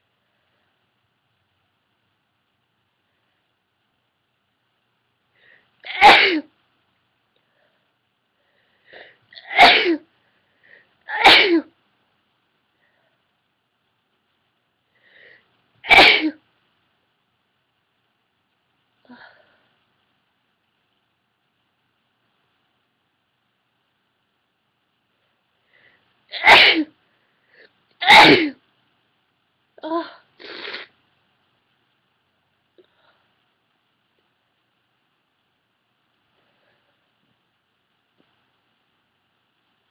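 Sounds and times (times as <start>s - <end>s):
faint in-breath: 5.3s - 5.7s, 7.4s - 9.3s, 10.1s - 11.0s, 14.9s - 15.6s, 25.6s - 26.1s, 27.0s - 27.8s, 32.8s - 33.4s, 36.3s - 37.1s
woman sneezing: 5.9s - 6.5s, 9.4s - 10.0s, 11.1s - 11.7s, 15.9s - 16.4s, 26.3s - 26.9s, 28.0s - 28.6s.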